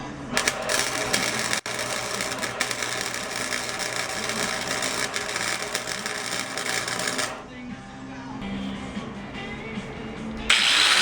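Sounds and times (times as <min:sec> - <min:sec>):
welder arc crackling: 0:00.0 - 0:07.4, 0:10.4 - 0:11.0.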